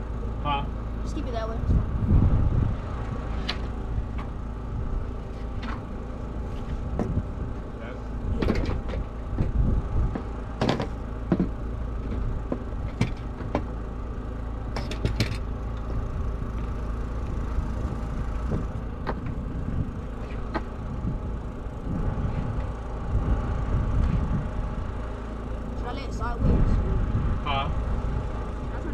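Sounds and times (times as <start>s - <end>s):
low mechanical hum: 0.0s - 28.9s
sharp knocks and clatter: 6.9s - 7.2s, 8.4s - 9.5s, 10.1s - 13.8s, 14.7s - 15.5s.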